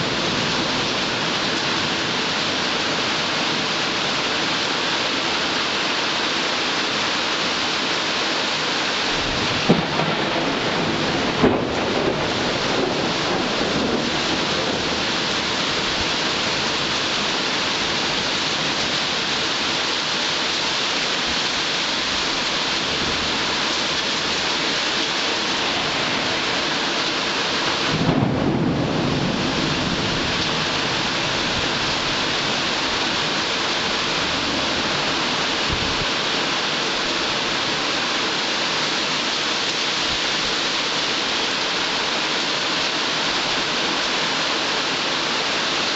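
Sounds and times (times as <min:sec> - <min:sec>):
heavy rain falling: 0:00.0 - 0:45.9
low rumble of thunder: 0:09.1 - 0:18.9, 0:27.7 - 0:36.2.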